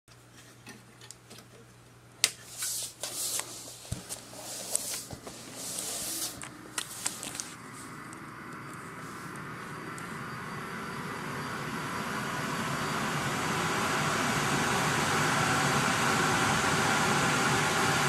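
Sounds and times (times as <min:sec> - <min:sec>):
rustling and rubbing: 0:02.4 - 0:07.6.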